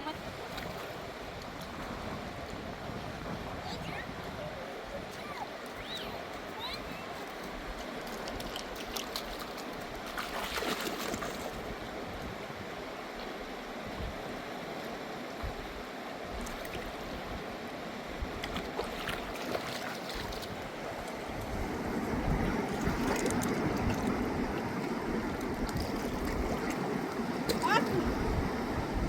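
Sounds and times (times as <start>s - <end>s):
river rushing: 0.0s - 29.0s
light clicks or splashes: 7.3s - 11.6s, 18.4s - 21.5s, 22.7s - 24.2s.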